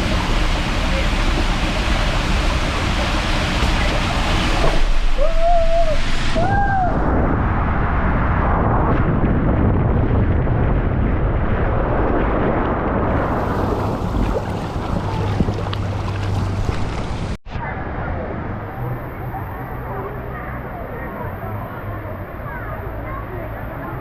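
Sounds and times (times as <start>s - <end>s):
rushing water: 0.0s - 7.0s, 12.6s - 17.4s
wind buffeting microphone: 0.0s - 17.4s.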